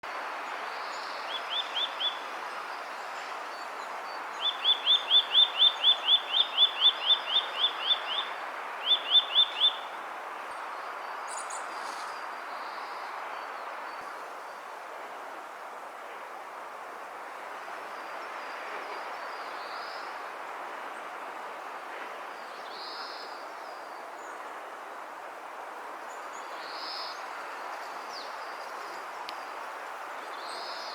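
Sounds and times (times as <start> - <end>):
background hiss: 0.1 - 30.9
bird singing whistled notes: 4.4 - 9.9.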